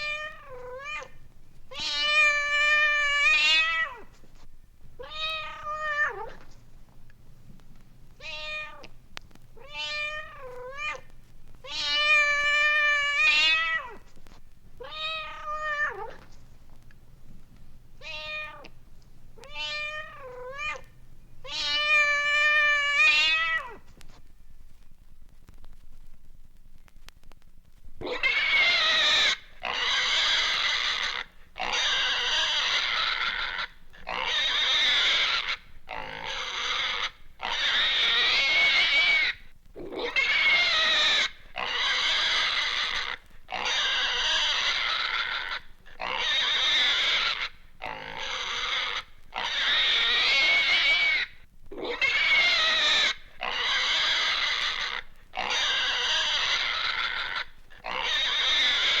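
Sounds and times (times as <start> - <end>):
pig squealing: 28.0 - 59.0.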